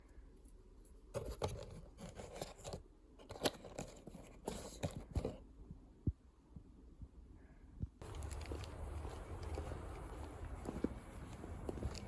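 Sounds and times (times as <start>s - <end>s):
faint rustling and scraping: 0.0s - 5.5s.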